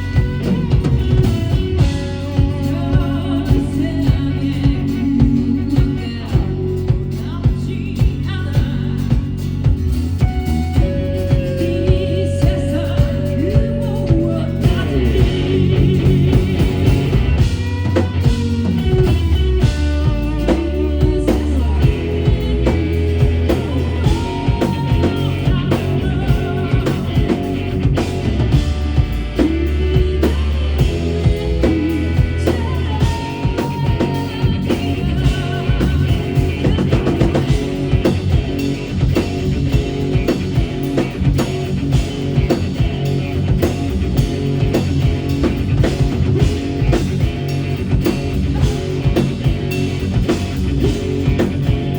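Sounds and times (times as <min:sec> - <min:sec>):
person singing: 0:00.0 - 0:09.3, 0:10.8 - 0:38.2
bass guitar: 0:00.0 - 0:51.9
drum kit: 0:00.0 - 0:51.9
electric guitars: 0:00.0 - 0:51.9.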